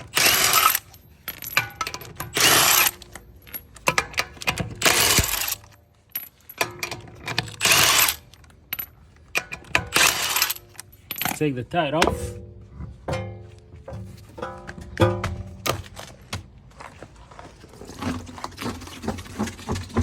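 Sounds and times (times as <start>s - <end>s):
power tool spinning lug nuts: 0.0s - 5.7s, 7.0s - 8.4s, 9.5s - 10.8s
metal nuts clicking and clinking: 0.0s - 11.6s.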